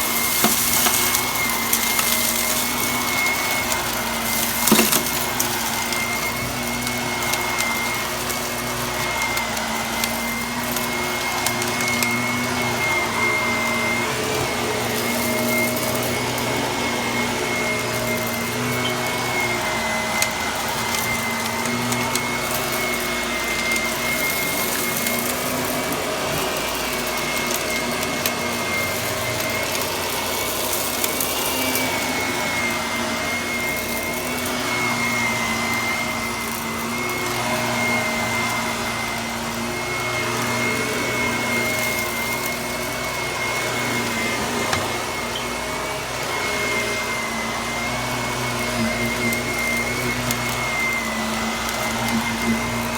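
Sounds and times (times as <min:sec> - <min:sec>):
debris crackling in vacuum: 0:00.0 - 0:45.2
vacuum cleaner running: 0:00.0 - 0:52.9.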